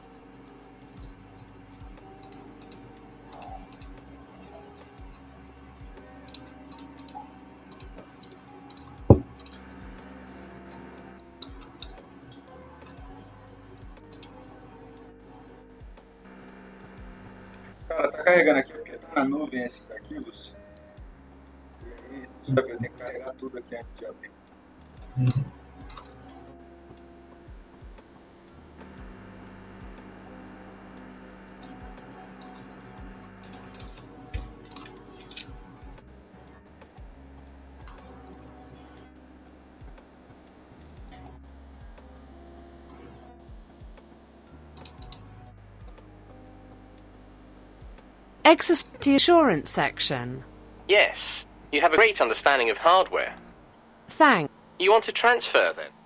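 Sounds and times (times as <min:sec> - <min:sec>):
steady low hum: 0:00.0 - 0:19.2, 0:23.8 - 0:42.4.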